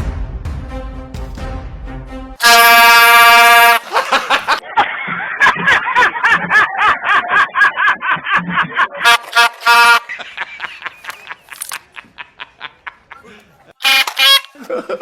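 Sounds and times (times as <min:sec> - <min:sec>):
prank trumpet horn blast: 0:02.4 - 0:04.6, 0:09.0 - 0:10.2, 0:13.8 - 0:14.6
rapid high-pitched laughter: 0:03.9 - 0:09.2.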